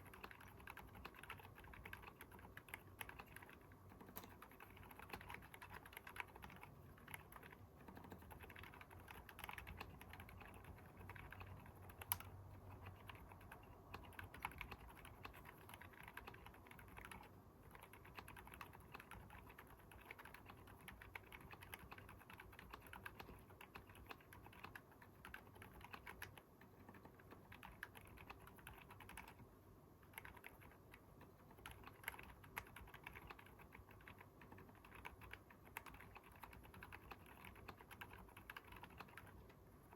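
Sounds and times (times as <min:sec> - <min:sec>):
sharp keyboard click: 0:00.0 - 0:29.4, 0:30.0 - 0:39.6
soft muted keyboard typing: 0:00.0 - 0:39.9.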